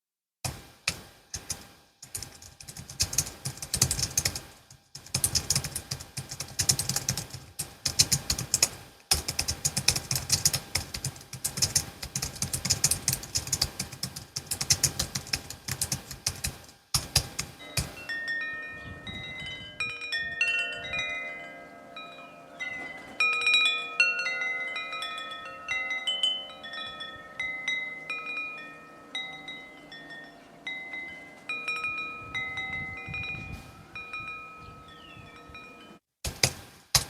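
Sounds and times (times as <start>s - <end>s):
wind chimes ringing: 17.6s - 36.1s.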